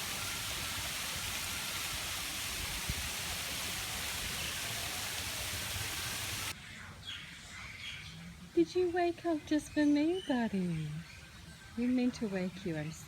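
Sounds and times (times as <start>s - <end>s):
water rushing: 0.0s - 6.5s.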